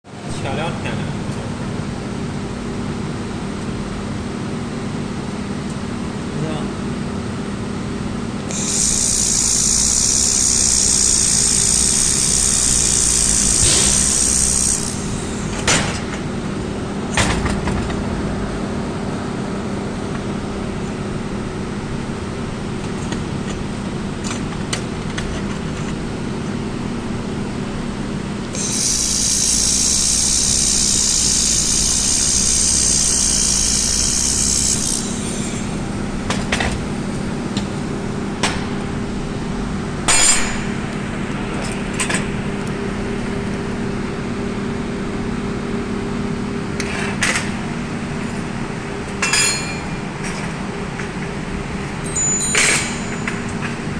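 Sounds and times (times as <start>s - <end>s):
machine hum: 0.2s - 46.8s
loud high hissing: 8.5s - 15.6s, 28.6s - 35.9s.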